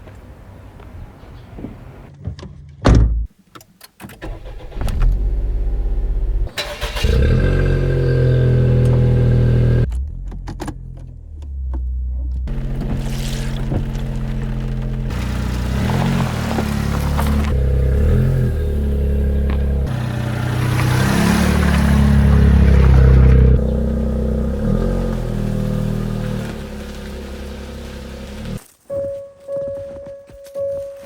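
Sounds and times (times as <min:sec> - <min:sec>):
car engine starting and idling: 0:04.1 - 0:28.6.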